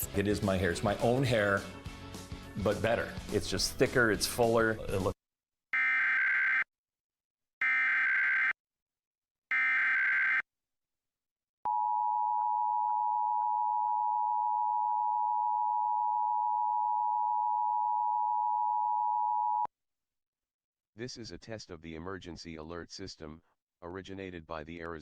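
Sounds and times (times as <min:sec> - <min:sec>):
two-tone alarm: 0:05.8 - 0:06.7, 0:07.6 - 0:08.6, 0:09.5 - 0:10.4.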